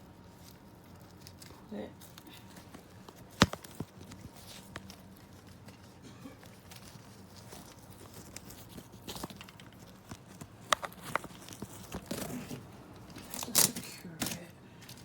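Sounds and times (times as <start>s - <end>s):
case parts knocking and clicking: 8.5s - 15.0s.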